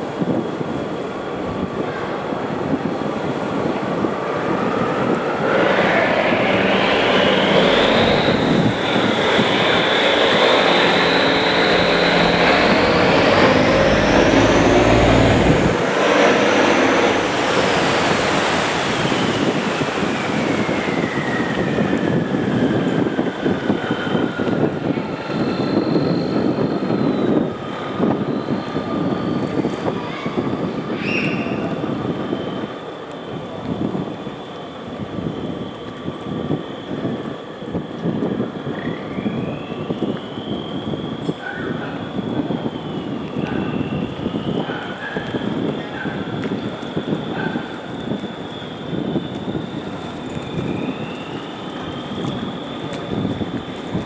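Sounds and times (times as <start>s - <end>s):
water wash: 0.0s - 25.9s, 46.4s - 54.0s
wind: 0.0s - 54.0s
boat engine whining: 0.7s - 29.8s, 31.1s - 54.0s.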